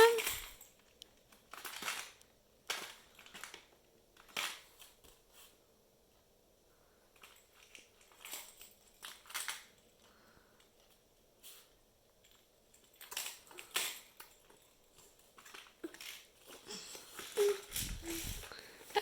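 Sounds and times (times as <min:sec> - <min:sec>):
toy shakers rattling: 0:00.0 - 0:00.6, 0:12.9 - 0:19.0.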